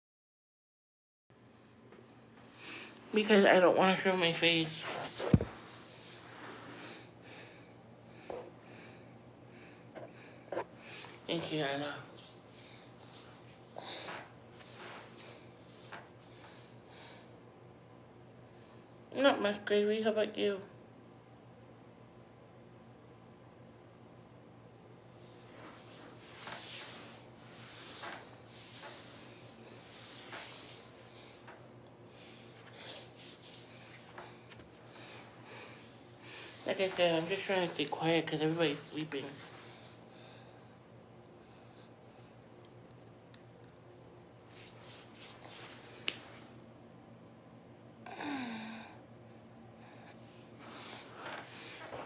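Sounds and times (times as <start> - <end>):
soft breathing and sniffs: 32.3 - 37.9, 44.5 - 46.6, 50.1 - 52.0
person sighing: 48.0 - 49.0.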